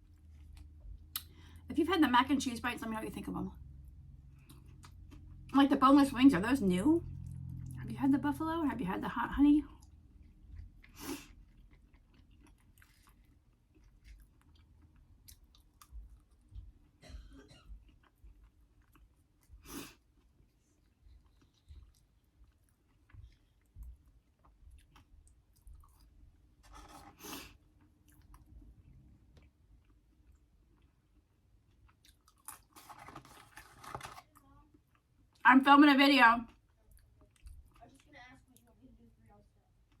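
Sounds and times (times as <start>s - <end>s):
person chewing food: 0.0s - 1.6s, 3.9s - 5.5s, 9.7s - 17.0s, 17.6s - 34.1s, 36.5s - 38.7s.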